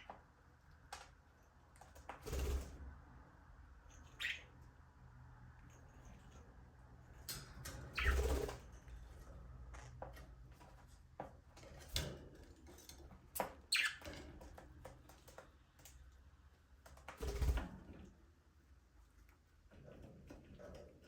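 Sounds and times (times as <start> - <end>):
budgerigars chirping: 4.2 - 4.5.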